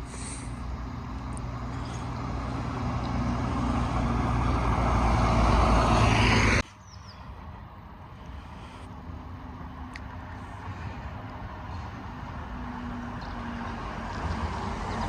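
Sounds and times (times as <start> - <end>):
vehicle engine running: 0.0 - 15.0.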